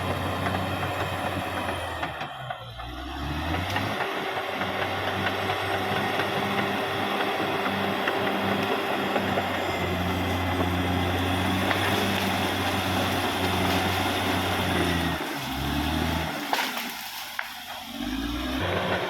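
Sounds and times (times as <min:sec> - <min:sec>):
bulldozer diesel engine running: 0:00.0 - 0:19.0.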